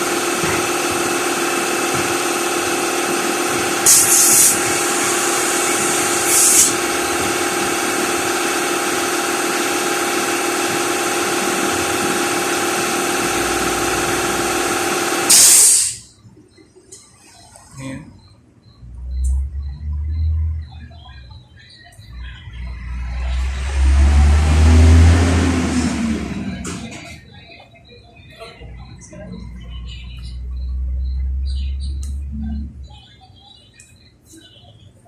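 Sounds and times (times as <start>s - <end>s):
air compressor motor humming: 0.0s - 16.1s, 22.1s - 27.2s
compressed air hissing: 3.8s - 6.8s, 15.2s - 16.1s.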